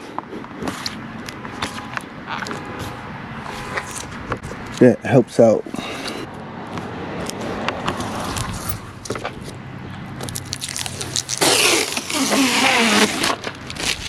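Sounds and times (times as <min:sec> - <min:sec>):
plastic crackling and crinkling: 0:10.2 - 0:14.0
plastic rustling: 0:10.2 - 0:14.0.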